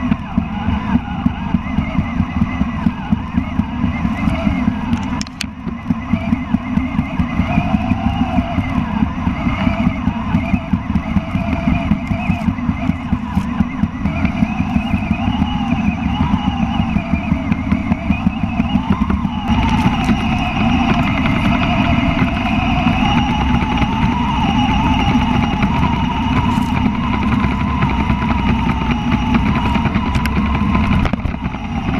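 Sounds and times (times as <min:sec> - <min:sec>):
electric motor whining: 0:00.0 - 0:31.9
tracks rattling: 0:00.0 - 0:31.9.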